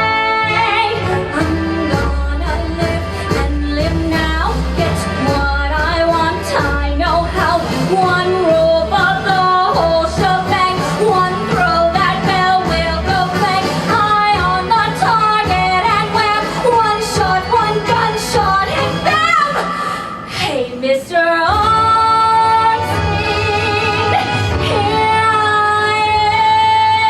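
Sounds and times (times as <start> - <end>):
instrumental accompaniment: 0.0 - 19.4.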